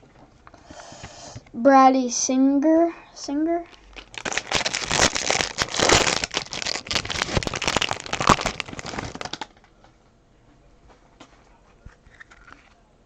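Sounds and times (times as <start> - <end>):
plastic wrapper crinkling: 3.6 - 9.9, 12.1 - 12.8.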